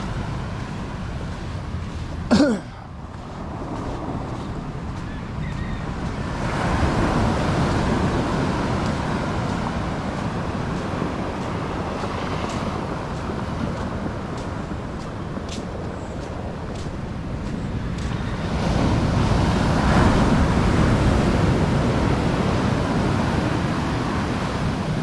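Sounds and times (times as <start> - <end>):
wind buffeting microphone: 0.0 - 25.0
wave breaking on beach: 6.1 - 15.9, 16.5 - 25.0.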